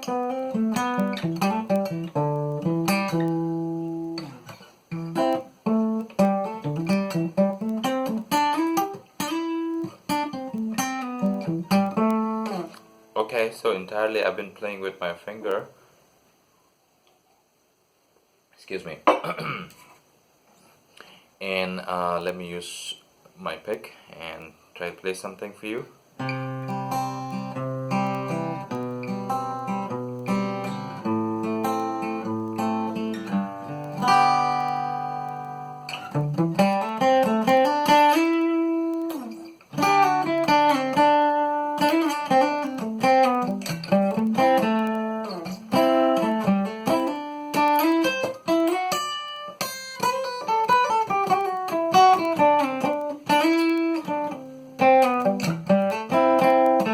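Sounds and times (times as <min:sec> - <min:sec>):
acoustic guitar single-note melody: 0:00.0 - 0:14.4, 0:26.2 - 0:56.9
acoustic guitar chords: 0:00.0 - 0:15.7, 0:26.2 - 0:56.9.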